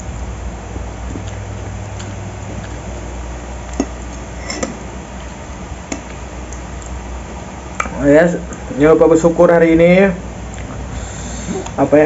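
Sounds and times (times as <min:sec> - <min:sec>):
steady low hum: 0:00.0 - 0:12.0
spoon clinking against plate: 0:03.8 - 0:04.8.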